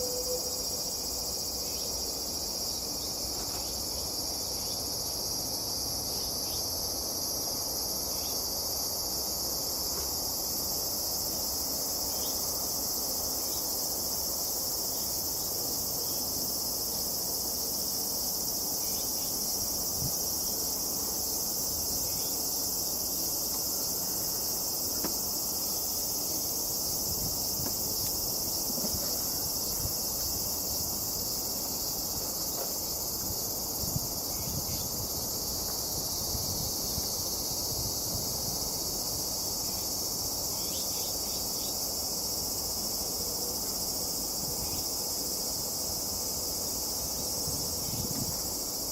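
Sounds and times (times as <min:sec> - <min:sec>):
insects trilling: 0:00.0 - 0:48.9.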